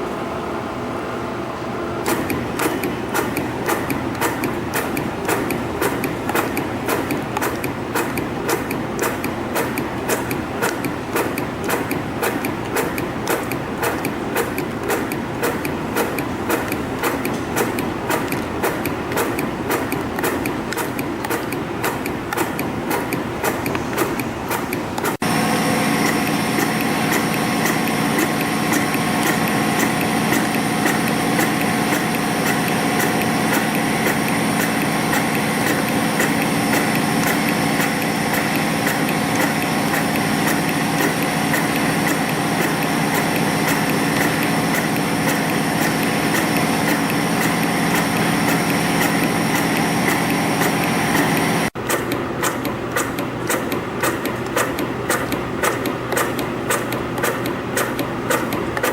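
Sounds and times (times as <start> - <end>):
machine motor hum: 0.0 - 58.9
fast even machine clicking: 2.0 - 58.9.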